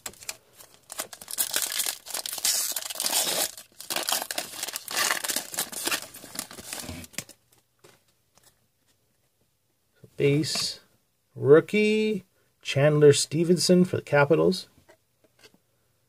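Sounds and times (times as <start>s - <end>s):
foil wrapper tearing and crinkling: 0.0s - 7.3s.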